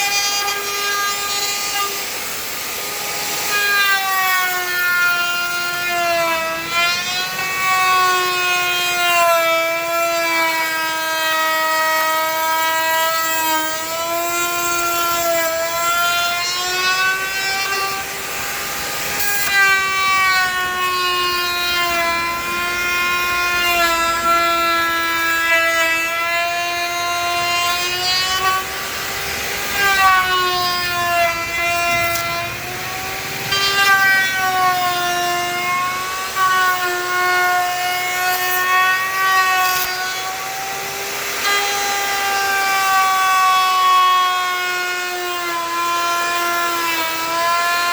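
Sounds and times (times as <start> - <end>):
power tool whining: 0.0 - 47.9.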